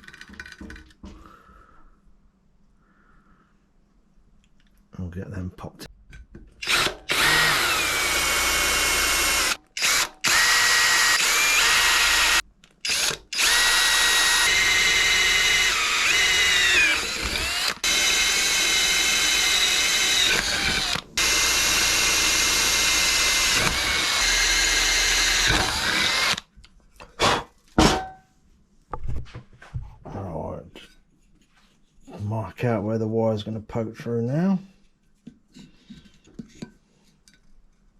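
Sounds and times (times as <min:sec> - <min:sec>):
electric drill whining: 0:06.6 - 0:26.4.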